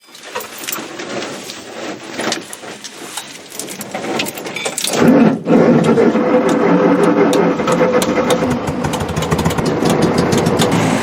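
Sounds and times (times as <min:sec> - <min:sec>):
clicks and rattles: 0:00.0 - 0:10.9
engine cranking on starter: 0:04.1 - 0:11.0
engine running: 0:05.0 - 0:11.0.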